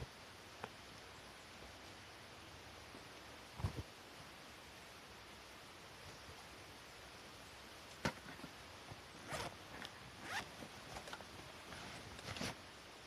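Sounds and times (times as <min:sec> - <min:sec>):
zipper pulled: 0:09.2 - 0:12.6.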